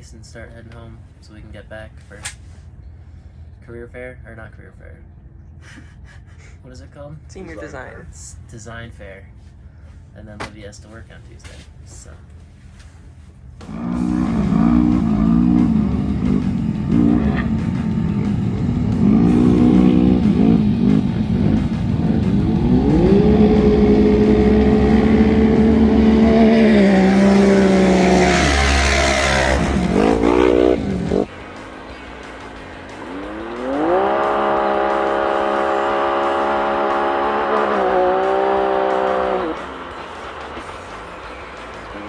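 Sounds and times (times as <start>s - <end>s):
race car engine accelerating: 13.6s - 42.0s.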